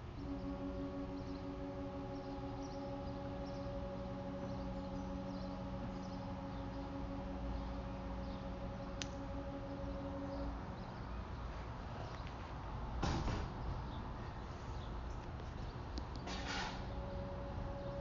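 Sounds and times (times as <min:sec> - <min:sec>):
air horns blasting a chord: 0:00.0 - 0:12.0, 0:16.3 - 0:18.0.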